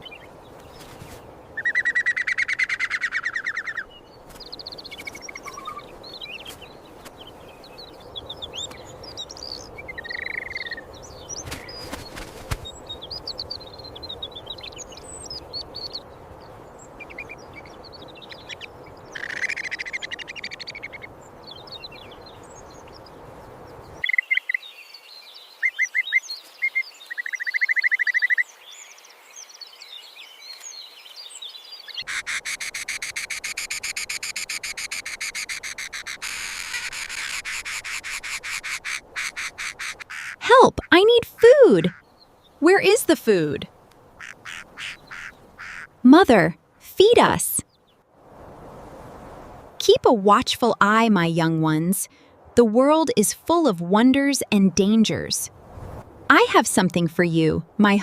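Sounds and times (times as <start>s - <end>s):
bird rattling call: 32.0s - 40.4s, 44.2s - 45.9s.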